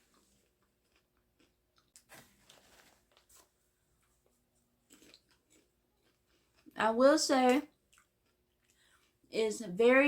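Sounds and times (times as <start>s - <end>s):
popcorn crunching and chewing: 0.0s - 9.6s.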